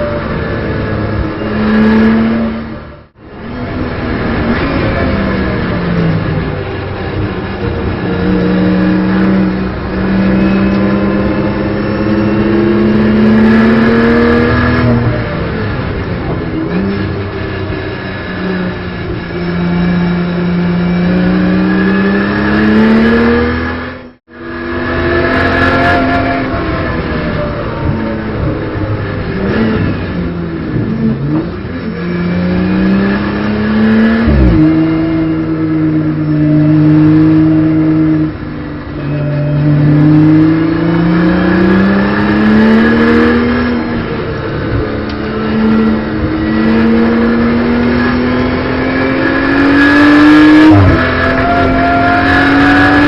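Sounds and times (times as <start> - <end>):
car engine revving from inside: 30.7 - 38.4, 39.1 - 53.0.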